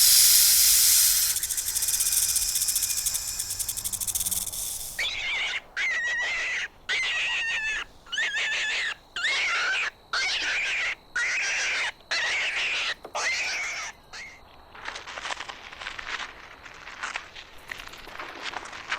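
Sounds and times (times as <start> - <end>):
bird harsh drawn-out calls: 0.0 - 5.1.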